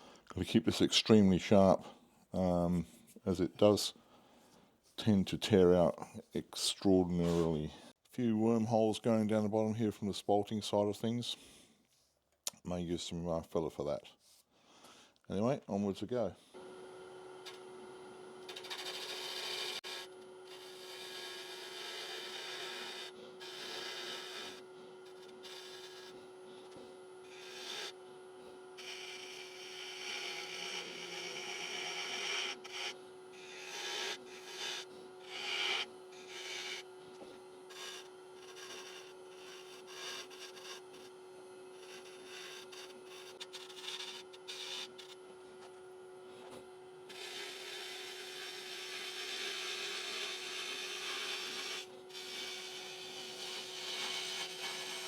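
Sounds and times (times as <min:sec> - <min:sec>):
lathe humming: 0:16.6 - 0:55.0
gouge scraping wood on lathe: 0:17.4 - 0:45.7, 0:46.4 - 0:55.0.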